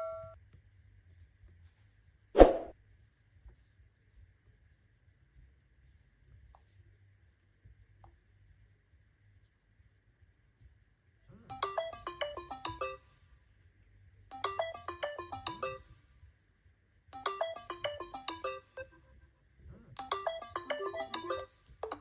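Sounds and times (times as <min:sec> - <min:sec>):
phone ringtone melody: 0:00.0 - 0:00.4, 0:11.5 - 0:13.0, 0:14.3 - 0:15.9, 0:17.2 - 0:19.0, 0:20.0 - 0:22.0.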